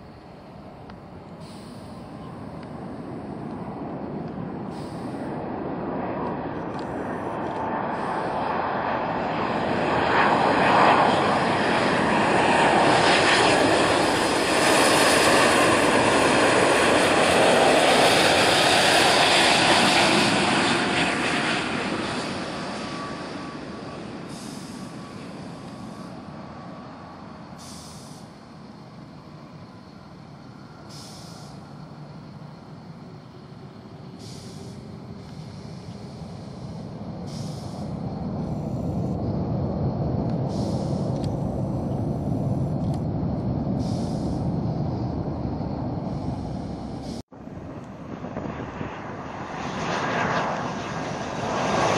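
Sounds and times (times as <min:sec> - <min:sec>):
jet engines passing by: 0:00.0 - 0:51.9.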